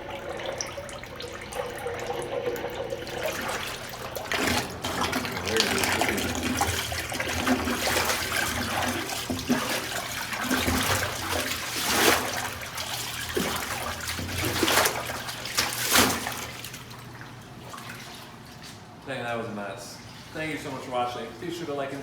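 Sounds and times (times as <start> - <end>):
toilet water draining and gurgling: 0.0 - 18.6.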